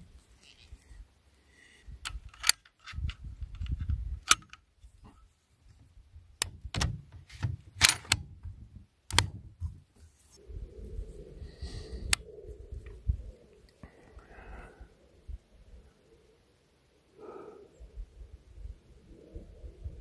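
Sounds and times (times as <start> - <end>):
rifle gear clicks and knocks: 6.4 - 10.0.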